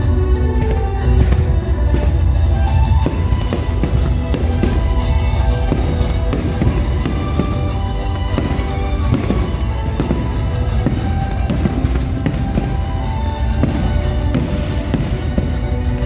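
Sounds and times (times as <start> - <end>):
fireworks popping and crackling: 0.0 - 16.0
music with strong bass: 0.0 - 16.0.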